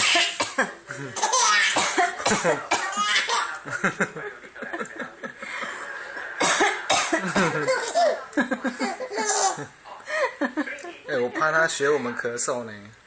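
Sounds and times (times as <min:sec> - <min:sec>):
person coughing: 0:00.0 - 0:03.1, 0:06.4 - 0:08.1
laughter: 0:03.4 - 0:10.8.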